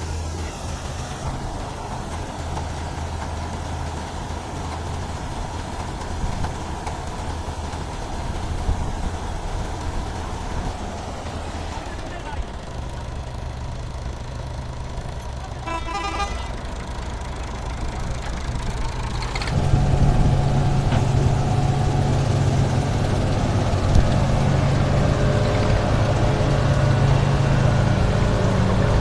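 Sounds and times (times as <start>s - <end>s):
harvester engine running: 0.0s - 29.0s
horn toot: 15.6s - 16.6s.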